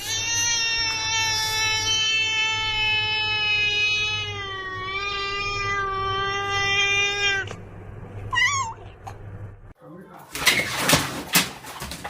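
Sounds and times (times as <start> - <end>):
cat yowling: 0.0 - 7.6, 8.3 - 8.9.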